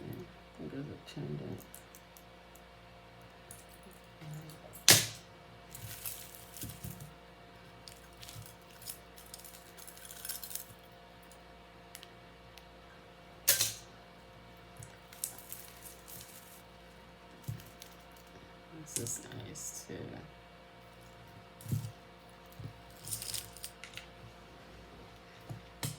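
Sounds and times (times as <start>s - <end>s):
jewelry clinking: 3.5s - 7.1s, 8.0s - 10.7s, 22.9s - 24.0s.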